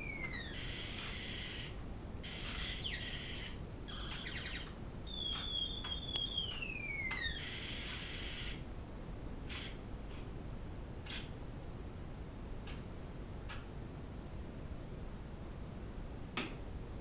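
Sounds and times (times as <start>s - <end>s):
wavering electronic tone: 0.0s - 1.7s, 2.3s - 8.6s.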